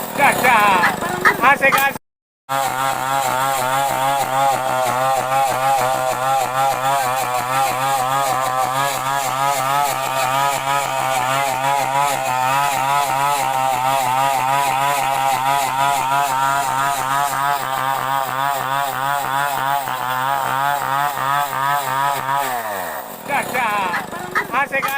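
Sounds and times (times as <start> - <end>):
chainsaw engine running: 0.0 - 24.9.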